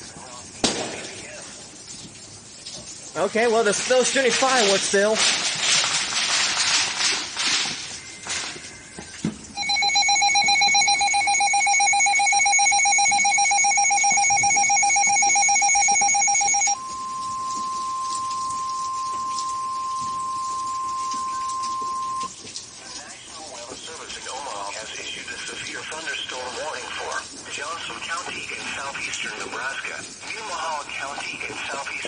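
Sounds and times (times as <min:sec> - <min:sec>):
rain: 0:00.0 - 0:10.8, 0:16.7 - 0:32.0
pulsing two-tone alarm: 0:09.6 - 0:22.4
steady alarm tone: 0:09.6 - 0:22.4.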